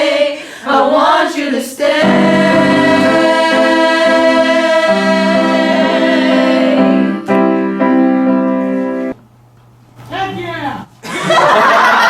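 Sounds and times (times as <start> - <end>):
person singing: 1.9 - 7.5
piano chords: 2.0 - 9.2.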